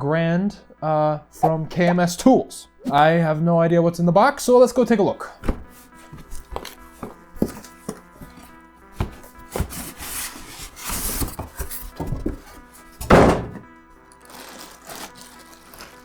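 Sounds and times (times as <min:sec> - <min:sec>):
background music: 0:00.0 - 0:16.0
cardboard box thunks and rustling: 0:05.4 - 0:13.7.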